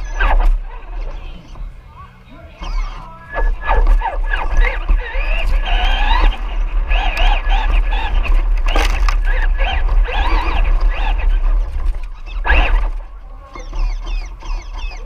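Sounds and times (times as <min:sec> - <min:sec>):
crowd talking and calling out: 0:00.0 - 0:08.6, 0:09.2 - 0:15.0
constant low hum: 0:00.0 - 0:15.0
high warbling tone: 0:00.0 - 0:15.0.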